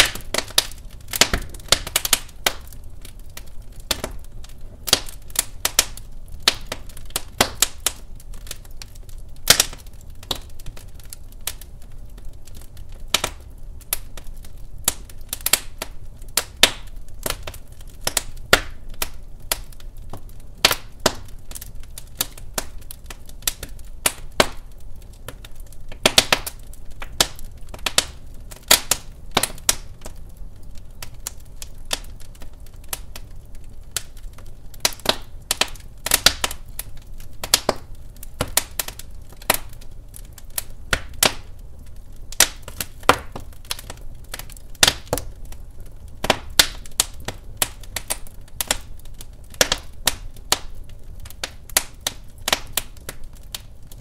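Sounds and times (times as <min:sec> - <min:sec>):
low rumble of burning logs: 0:00.0 - 0:54.0
wood fire crackling: 0:00.0 - 0:54.0.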